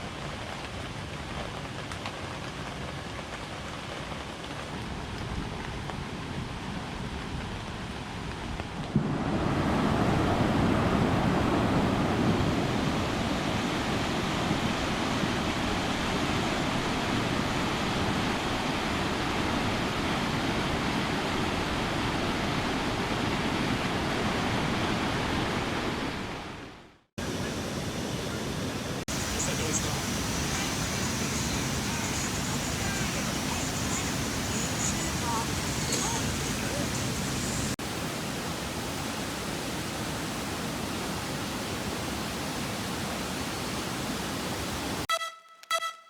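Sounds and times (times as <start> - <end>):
water rushing: 8.9 - 45.1.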